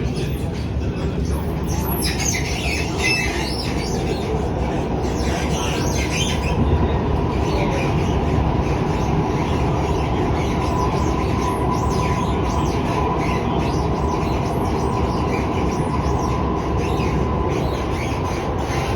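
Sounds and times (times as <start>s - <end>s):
train rumble: 0.0s - 18.9s.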